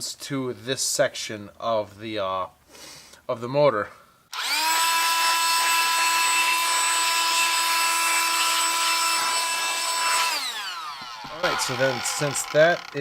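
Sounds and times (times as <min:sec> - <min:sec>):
small electric motor whining: 0:04.3 - 0:13.0.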